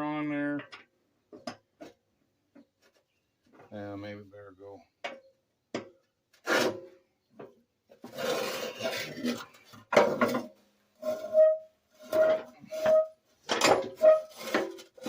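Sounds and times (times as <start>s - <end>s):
metal scraping: 8.0s - 15.0s.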